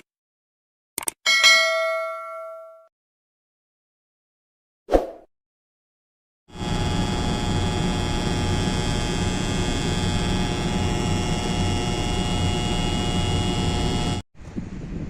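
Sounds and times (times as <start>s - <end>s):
air conditioner contactor humming: 6.5s - 14.2s.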